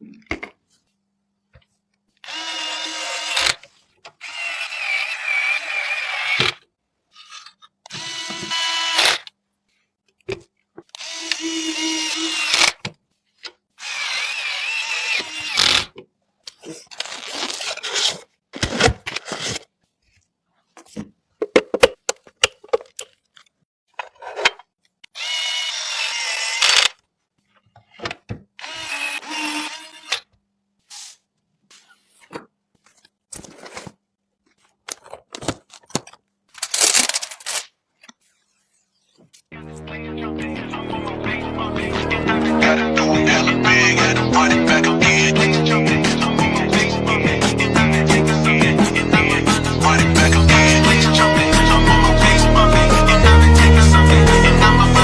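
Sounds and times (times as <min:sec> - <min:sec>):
electric screwdriver whirring: 0:02.2 - 0:06.6, 0:07.9 - 0:09.2, 0:11.0 - 0:12.8, 0:13.8 - 0:15.9, 0:25.1 - 0:27.0, 0:28.6 - 0:30.2.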